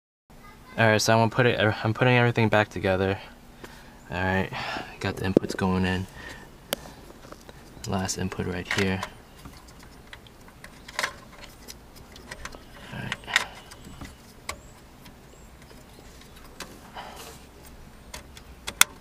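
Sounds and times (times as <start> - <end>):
plastic clicks and knocks: 18.1 - 19.0.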